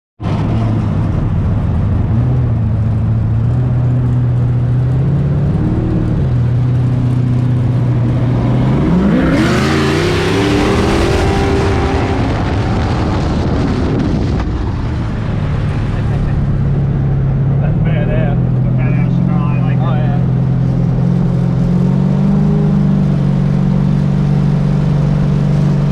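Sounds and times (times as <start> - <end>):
car engine idling and revving: 0.2 - 25.9.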